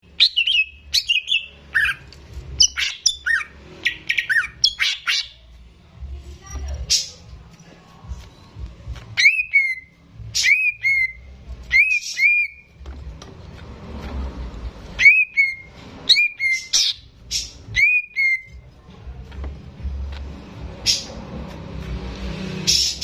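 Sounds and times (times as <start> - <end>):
bird whistled song: 0.1 - 5.4, 9.2 - 12.7, 15.0 - 18.6, 22.6 - 23.0
harsh rasping bird calls: 0.1 - 5.5, 9.2 - 12.7, 14.9 - 18.6.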